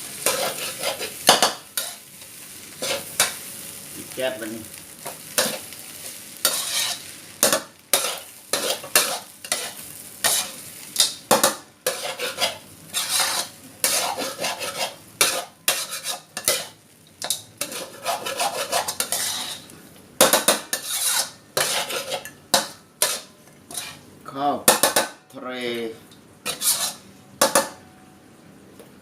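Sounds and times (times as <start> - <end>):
light sizzle: 0.0 - 29.0
spatula scraping pan: 0.2 - 2.1, 2.7 - 3.4, 5.3 - 24.1, 26.4 - 27.7.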